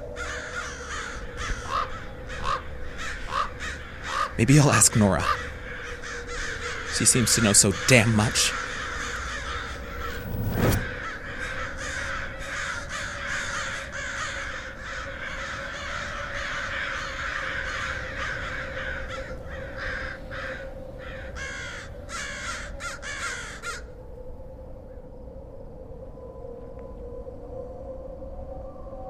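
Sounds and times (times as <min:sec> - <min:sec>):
steady low hum: 0:09.0 - 0:11.3.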